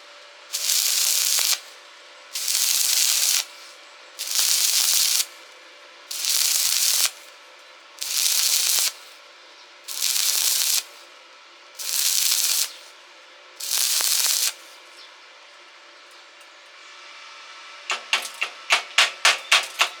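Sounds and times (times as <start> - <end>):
welding arc crackling: 0.5 - 5.4, 6.1 - 7.3, 8.0 - 9.2, 9.9 - 11.1, 11.8 - 12.9, 13.6 - 14.8, 17.9 - 20.0.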